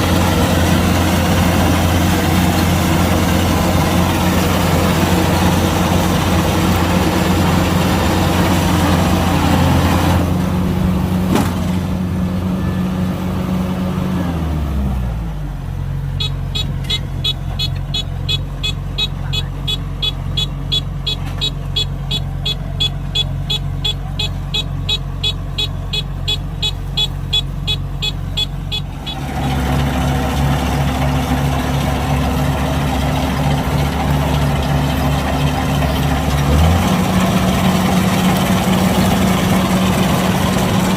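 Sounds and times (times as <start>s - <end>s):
combine harvester diesel engine running: 0.0s - 40.9s
high electronic warning beeps: 16.2s - 29.2s.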